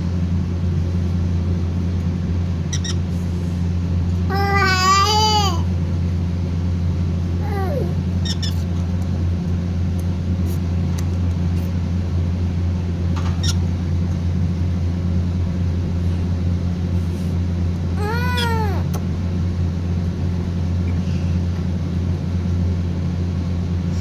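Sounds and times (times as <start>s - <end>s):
loud steady low hum: 0.0s - 24.0s
parrot calls and squawks: 2.7s - 3.0s, 7.4s - 8.6s, 18.0s - 18.9s.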